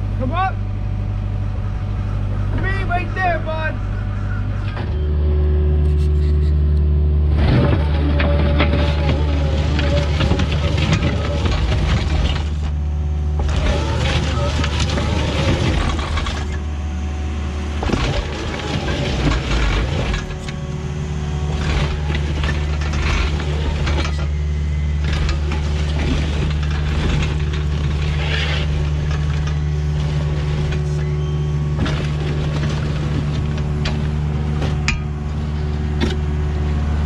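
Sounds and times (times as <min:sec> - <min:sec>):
excavator diesel engine running: 0:00.0 - 0:37.0
bucket scraping and knocking dirt: 0:07.6 - 0:12.8, 0:13.4 - 0:16.8, 0:17.6 - 0:35.1.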